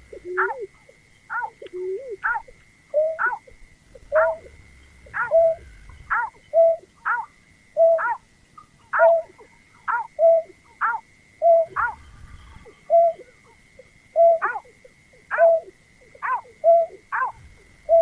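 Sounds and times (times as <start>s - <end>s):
bird calling: 0.0s - 18.0s
thin steady high tone: 0.0s - 18.0s.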